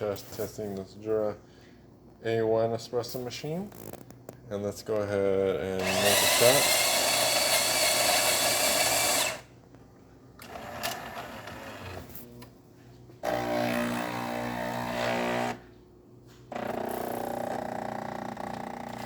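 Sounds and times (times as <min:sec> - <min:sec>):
coffee grinder whine: 0:05.8 - 0:09.5
espresso machine steady hum: 0:05.8 - 0:09.5.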